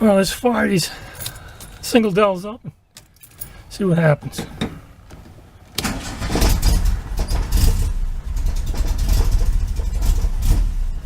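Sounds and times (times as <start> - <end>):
car engine starting and running: 5.4 - 11.0.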